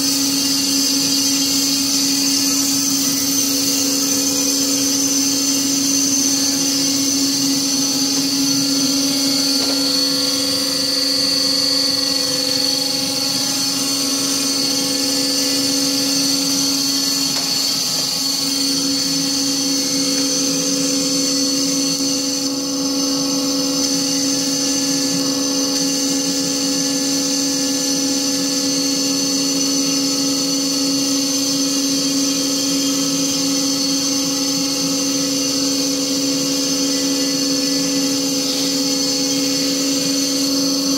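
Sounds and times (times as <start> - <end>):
band saw whining hum: 0.0 - 40.9.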